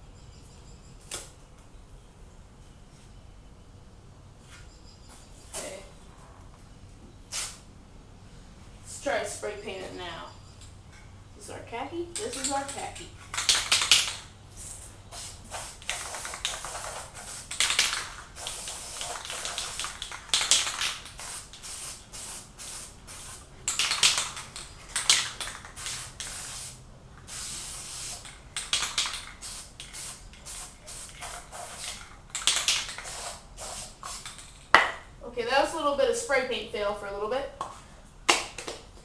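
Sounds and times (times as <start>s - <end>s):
spray paint can hissing: 12.2s - 34.6s.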